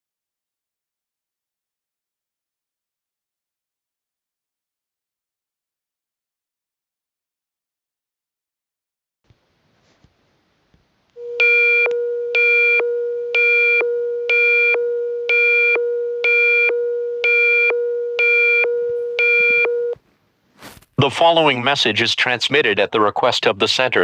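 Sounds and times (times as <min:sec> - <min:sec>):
steady low tone: 0:11.2 - 0:20.0
buzzy high beeps: 0:11.3 - 0:20.0.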